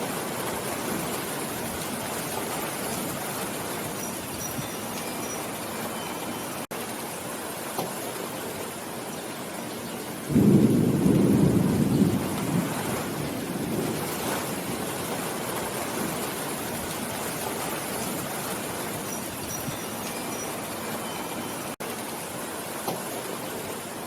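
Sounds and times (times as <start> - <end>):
steady rain: 0.0 - 24.0
thunder rumbling: 10.3 - 19.1.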